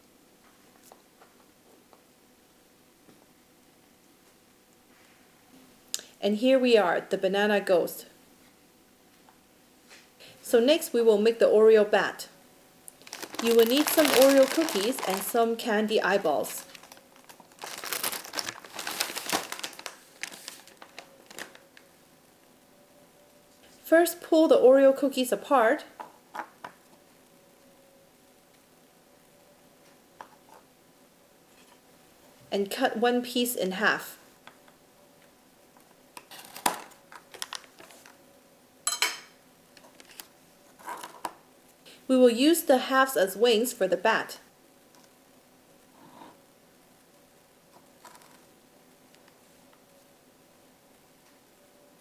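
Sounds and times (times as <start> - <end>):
plastic packaging crinkling: 12.9 - 21.8, 36.3 - 38.2.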